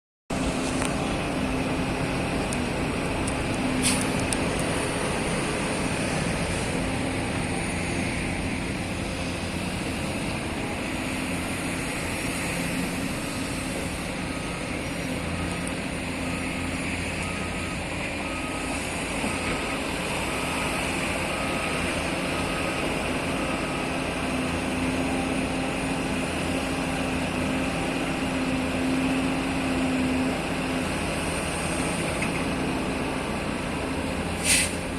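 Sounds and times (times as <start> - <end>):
diesel excavator running: 0.3 - 34.9
reversing alarm beeps: 10.2 - 26.1.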